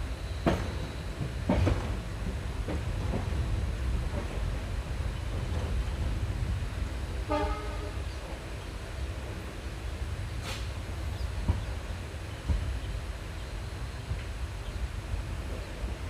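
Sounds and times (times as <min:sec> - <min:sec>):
train rumbling: 0:00.0 - 0:16.0
train horn toot: 0:07.2 - 0:08.1
short hiss: 0:10.4 - 0:10.8.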